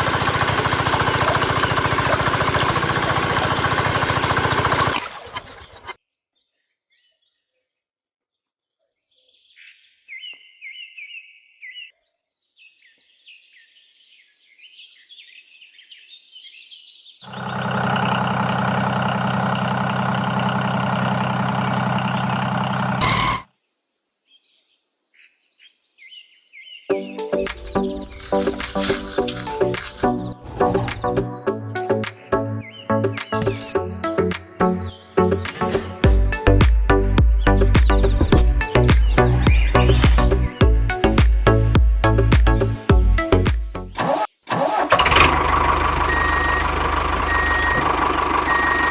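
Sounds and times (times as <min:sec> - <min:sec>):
birds chirping: 0:00.0 - 0:06.0, 0:25.1 - 0:44.2, 0:46.0 - 0:48.9
small engine running: 0:00.0 - 0:06.0, 0:17.3 - 0:23.4, 0:37.5 - 0:40.6, 0:43.9 - 0:48.9.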